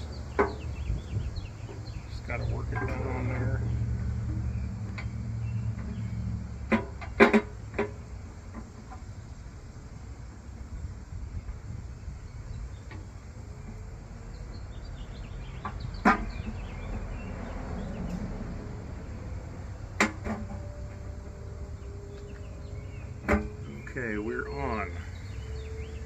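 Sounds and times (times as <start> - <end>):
sharp metal knocks: 15.6 - 17.0, 22.1 - 23.8.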